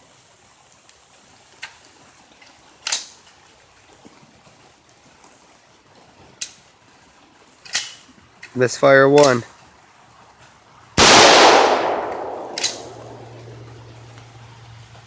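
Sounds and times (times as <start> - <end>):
rifle shots: 11.0 - 13.9.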